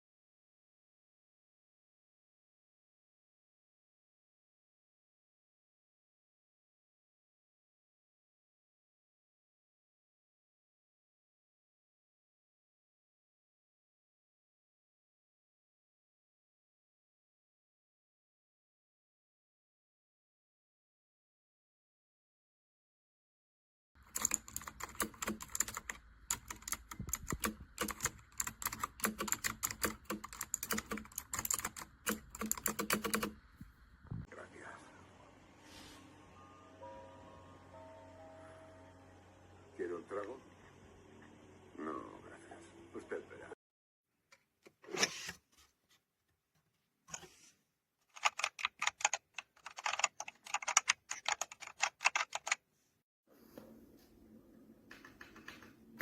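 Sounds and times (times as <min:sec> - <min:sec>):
typing on mechanical keyboard: 0:24.0 - 0:33.6, 0:48.1 - 0:52.6.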